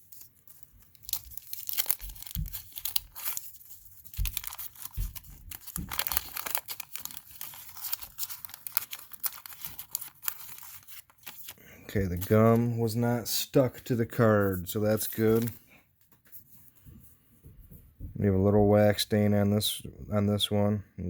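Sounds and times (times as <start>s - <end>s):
wax paper wrapper tearing: 0.0s - 12.7s
soft low thumps: 17.5s - 18.7s.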